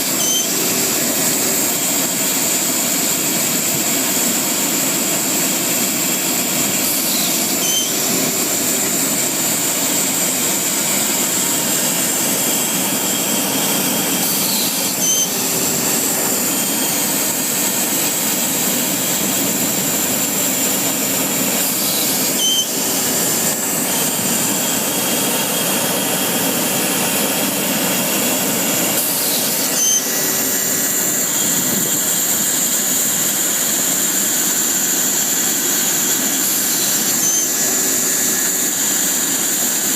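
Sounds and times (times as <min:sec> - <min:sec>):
air compressor running: 0:00.0 - 0:39.9
short high tone: 0:00.2 - 0:00.6, 0:07.6 - 0:08.1, 0:12.9 - 0:17.3, 0:21.9 - 0:24.0.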